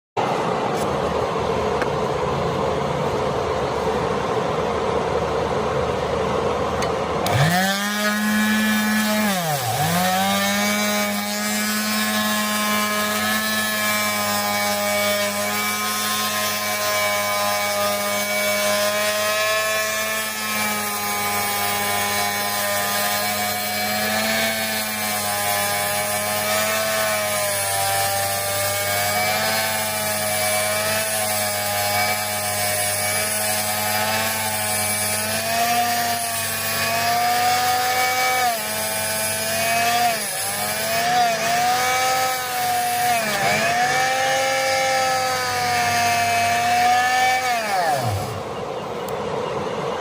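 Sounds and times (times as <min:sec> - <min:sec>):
power tool motor whining: 0:06.8 - 0:49.2.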